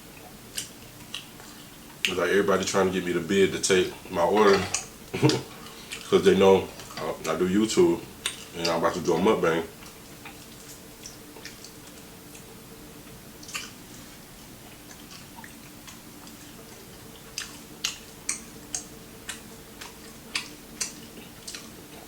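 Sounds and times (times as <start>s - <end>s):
faint steady hum: 0.0s - 22.0s
person chewing crunchy food: 0.2s - 2.1s, 9.8s - 22.0s.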